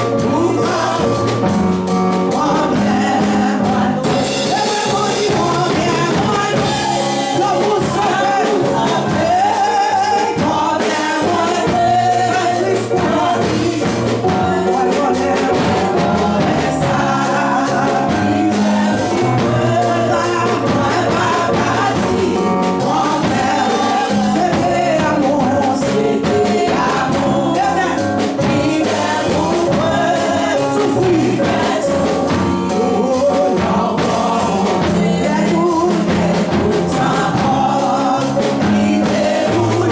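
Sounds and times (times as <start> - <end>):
steady bass: 0.0 - 9.5
band accompanying: 0.0 - 39.9
choir singing gospel: 0.0 - 39.9
drum beat: 0.0 - 39.9.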